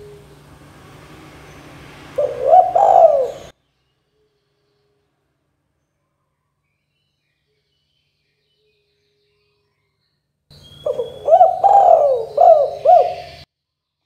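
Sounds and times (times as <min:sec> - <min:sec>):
dove cooing: 0:02.2 - 0:03.5, 0:10.8 - 0:13.4.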